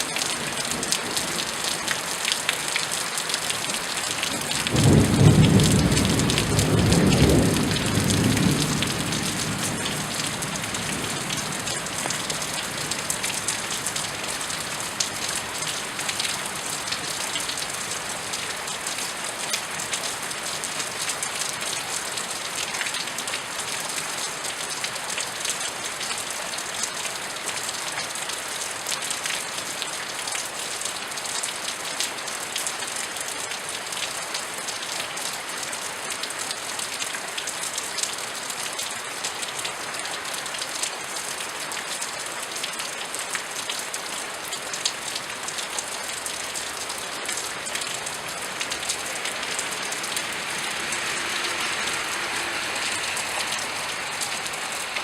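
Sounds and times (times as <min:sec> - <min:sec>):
raindrops ticking on hard surfaces: 0:00.0 - 0:55.0
steady rain hissing: 0:00.0 - 0:55.0.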